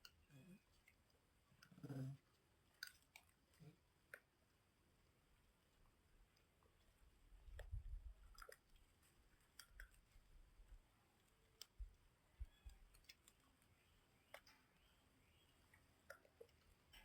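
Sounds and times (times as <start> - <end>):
faint clicks: 11.3 - 14.9.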